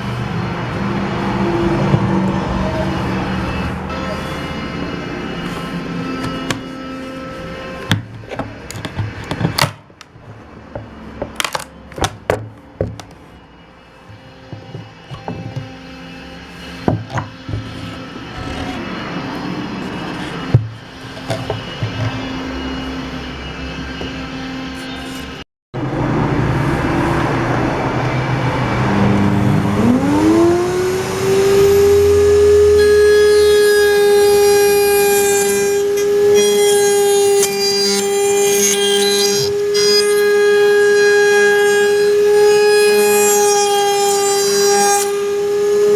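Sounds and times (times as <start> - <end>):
power tool motor whining: 0.0 - 25.4, 29.1 - 45.9
tools and wood knocking: 6.2 - 6.8, 7.8 - 13.3, 14.1 - 15.8, 16.8 - 18.8, 20.1 - 22.2.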